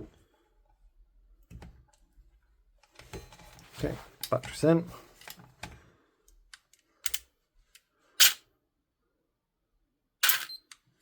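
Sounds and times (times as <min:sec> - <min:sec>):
mechanical clicks of rifle parts: 0:06.5 - 0:07.3, 0:10.2 - 0:10.9.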